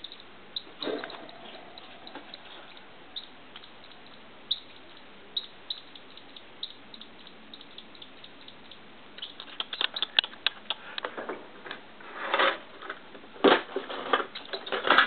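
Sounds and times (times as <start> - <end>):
squirrel mouth wet clicks: 9.3 - 10.8.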